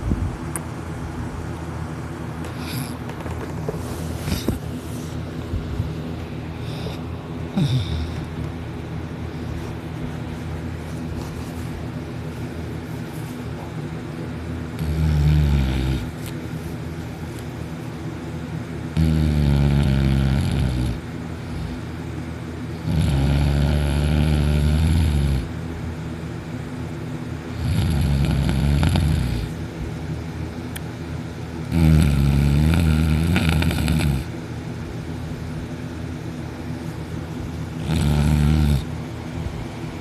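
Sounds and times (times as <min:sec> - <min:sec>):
person snoring heavily: 0:02.5 - 0:03.0, 0:04.1 - 0:05.1, 0:06.6 - 0:08.4, 0:14.7 - 0:16.2, 0:18.9 - 0:22.0, 0:22.7 - 0:25.5, 0:27.5 - 0:29.6, 0:31.7 - 0:34.3, 0:37.8 - 0:38.9
breathing: 0:06.6 - 0:07.0, 0:21.4 - 0:22.0.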